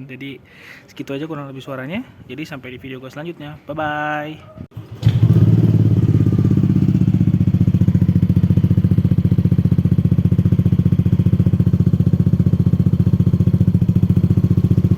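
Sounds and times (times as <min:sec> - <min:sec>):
scooter engine idling: 0:04.8 - 0:14.9.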